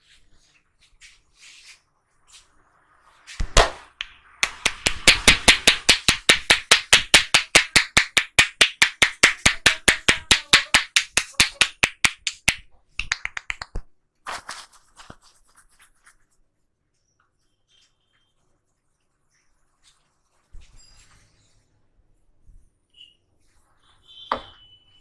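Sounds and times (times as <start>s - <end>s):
hands tapping on head: 3.4s - 13.9s.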